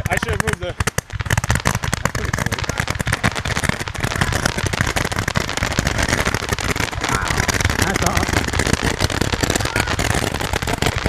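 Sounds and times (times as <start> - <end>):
fireworks popping and banging: 0.0 - 11.0.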